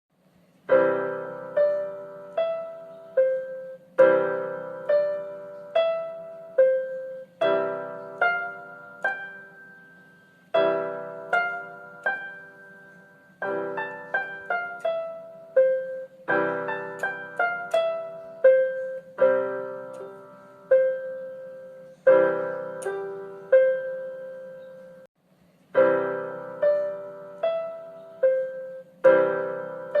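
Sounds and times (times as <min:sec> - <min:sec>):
piano melody: 0:00.4 - 0:30.0.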